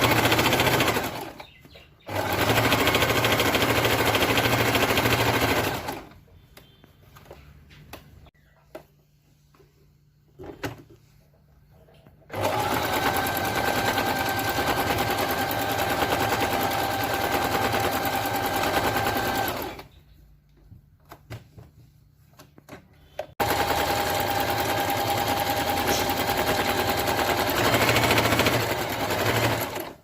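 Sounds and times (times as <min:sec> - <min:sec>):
sewing machine stitching: 0:00.0 - 0:06.2, 0:12.3 - 0:19.9, 0:23.4 - 0:30.0.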